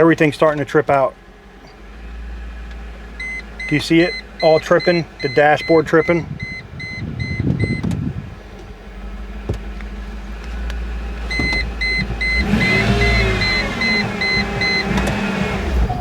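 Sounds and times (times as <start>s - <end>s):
engine idling hum: 0.0s - 16.0s
warning chime beeping rapidly: 3.2s - 7.8s, 11.3s - 14.9s
wavering whir: 6.4s - 16.0s.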